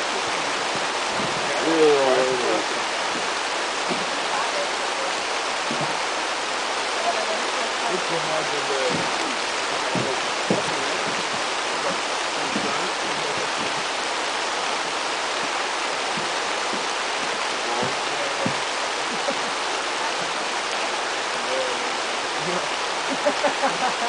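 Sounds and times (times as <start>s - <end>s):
rushing water: 0.0s - 24.0s.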